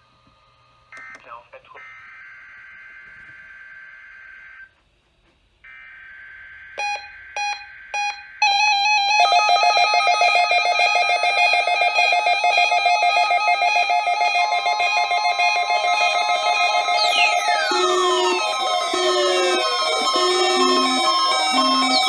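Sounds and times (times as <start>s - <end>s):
steady warning tone: 9.5s - 22.0s
pulsing alert beeps and tones: 14.3s - 22.0s
data header bursts: 14.5s - 22.0s.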